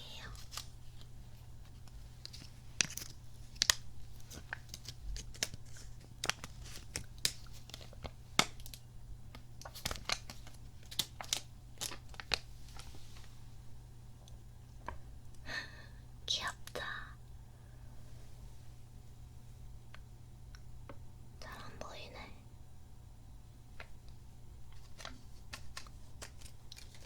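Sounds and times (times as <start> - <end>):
steady low hum: 0.0 - 27.0
plastic toy clicks and crinkles: 9.6 - 12.4.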